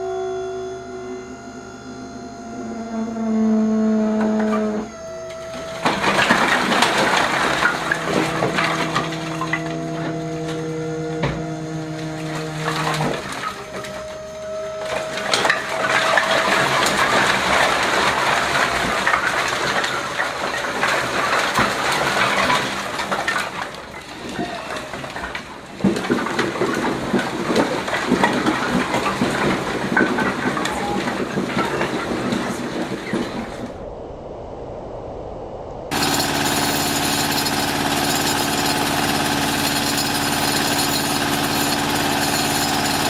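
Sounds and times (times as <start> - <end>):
machinery motor tone: 0.0 - 22.9, 35.9 - 43.0
wood crunching and crackling: 5.3 - 10.8, 11.4 - 33.2, 35.9 - 43.0.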